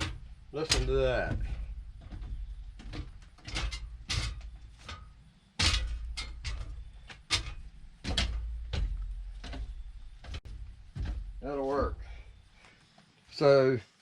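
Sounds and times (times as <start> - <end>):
footsteps on metal ramp: 0.0 - 12.8.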